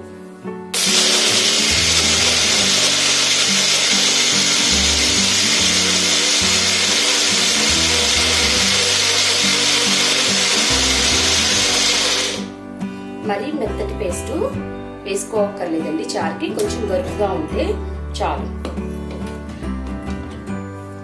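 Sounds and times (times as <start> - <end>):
background music: 0.0 - 21.0
mixer grinder running: 0.8 - 12.5.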